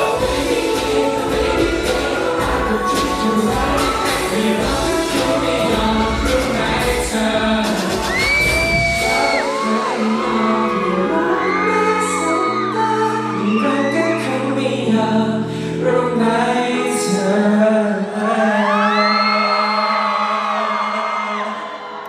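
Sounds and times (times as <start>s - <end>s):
live pop music with group singing: 0.0s - 22.0s
fans screaming: 7.9s - 14.3s.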